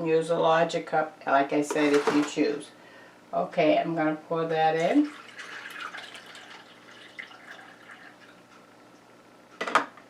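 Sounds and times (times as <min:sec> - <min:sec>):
water trickling into reservoir: 0:05.0 - 0:08.4.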